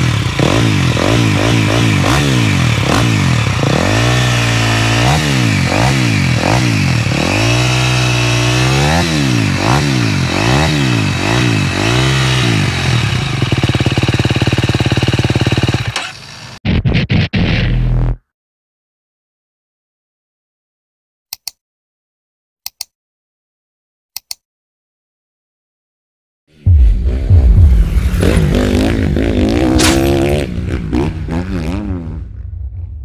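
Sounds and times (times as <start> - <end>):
motocross engine revving: 0.0 - 16.6, 26.9 - 32.2.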